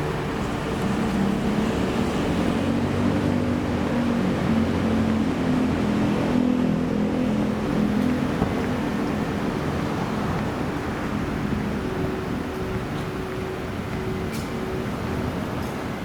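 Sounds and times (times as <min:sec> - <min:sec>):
city street traffic: 0:00.0 - 0:16.0
vehicle engine low hum: 0:00.0 - 0:16.0.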